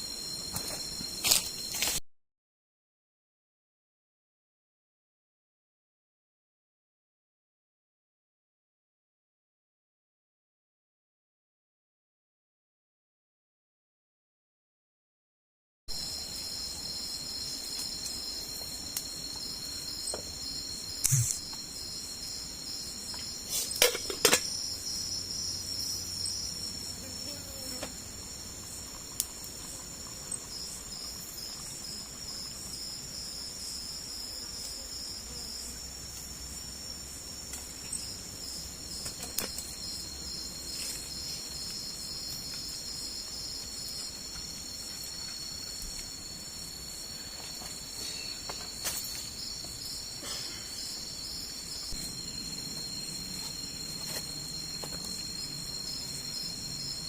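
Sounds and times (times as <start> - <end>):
insect chorus trilling: 0.0 - 2.0, 15.9 - 57.0.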